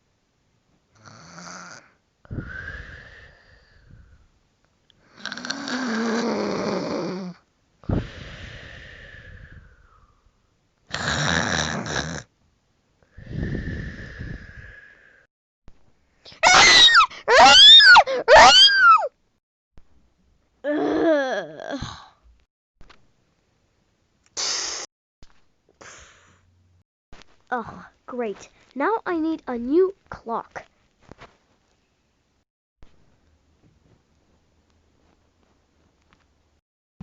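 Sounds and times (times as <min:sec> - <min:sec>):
person snoring: 0:01.0 - 0:03.9, 0:05.1 - 0:10.0, 0:10.9 - 0:12.3, 0:13.1 - 0:15.2.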